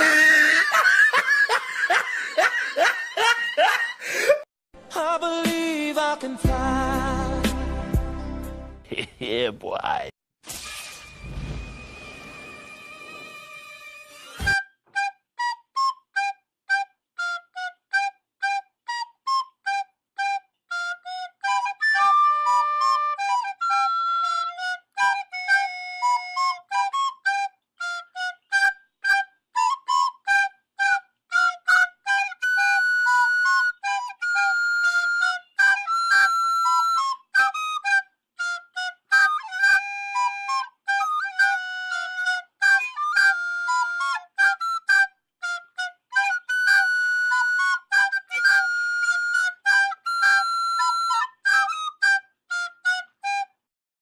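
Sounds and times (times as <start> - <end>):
high wind instrument melody: 11.5 - 53.6.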